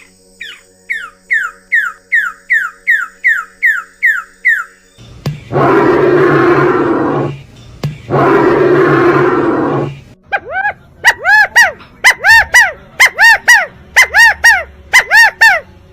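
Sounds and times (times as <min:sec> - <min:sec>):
bird coarse calls: 0:05.3 - 0:15.6
short rising falling bird calls: 0:05.4 - 0:07.4.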